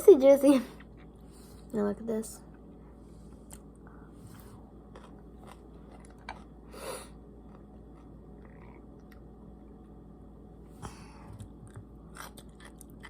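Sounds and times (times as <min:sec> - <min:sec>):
person chewing crunchy food: 0:04.4 - 0:09.3, 0:10.8 - 0:13.0.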